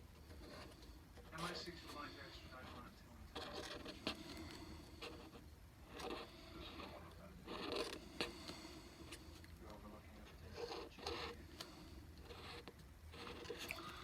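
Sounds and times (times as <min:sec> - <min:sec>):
pen scratching on paper: 0:00.2 - 0:14.0.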